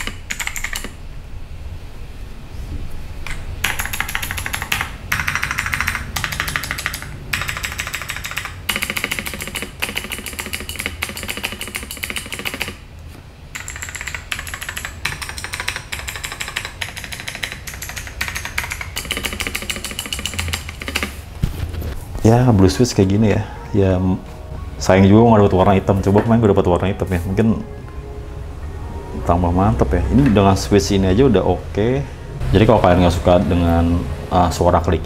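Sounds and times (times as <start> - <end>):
mechanical keyboard typing: 0.0 - 1.0, 3.3 - 12.8, 13.6 - 21.2.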